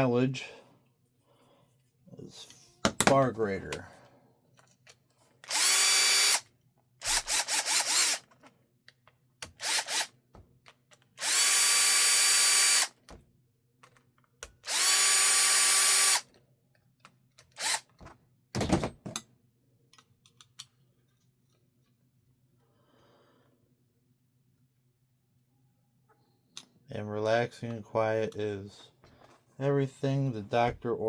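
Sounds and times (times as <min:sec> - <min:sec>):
cordless drill whining: 0:05.4 - 0:06.4, 0:07.0 - 0:08.3, 0:09.5 - 0:10.1, 0:11.2 - 0:13.0, 0:14.6 - 0:16.3, 0:17.6 - 0:17.9.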